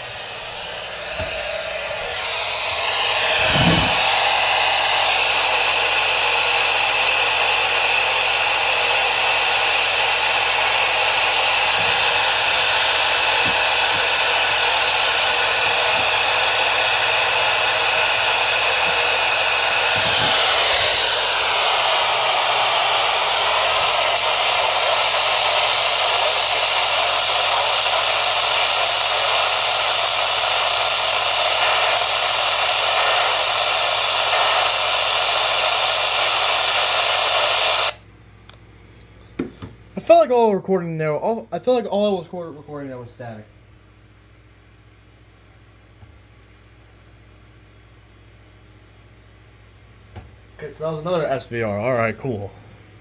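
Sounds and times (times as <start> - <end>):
radio static hiss: 0.0 - 38.0, 50.5 - 53.0.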